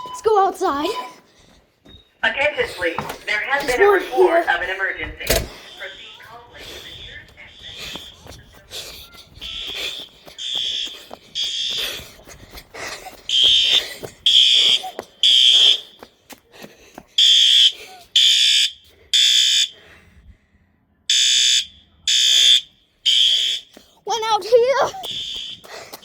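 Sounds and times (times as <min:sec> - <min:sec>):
fire alarm evacuation tone: 0:00.0 - 0:01.3, 0:05.2 - 0:08.4, 0:09.4 - 0:12.0, 0:13.3 - 0:16.0, 0:17.2 - 0:19.8, 0:21.1 - 0:23.8, 0:24.9 - 0:25.7.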